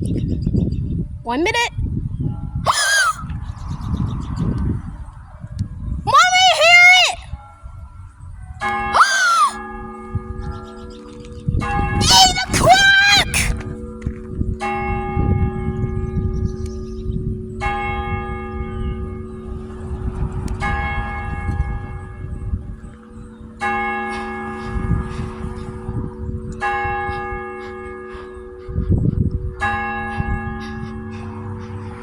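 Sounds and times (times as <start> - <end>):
church clock bell striking: 14.3 - 32.0.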